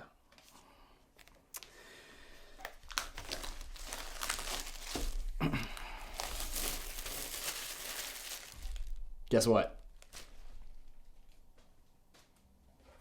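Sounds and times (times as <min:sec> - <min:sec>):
packaging crinkling and tearing: 0:01.2 - 0:01.7, 0:02.5 - 0:09.1, 0:09.8 - 0:11.4.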